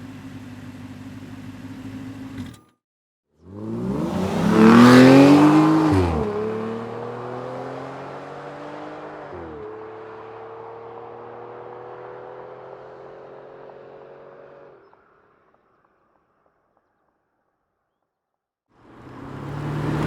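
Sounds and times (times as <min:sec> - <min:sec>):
car engine accelerating: 0:03.4 - 0:15.1, 0:18.8 - 0:20.0.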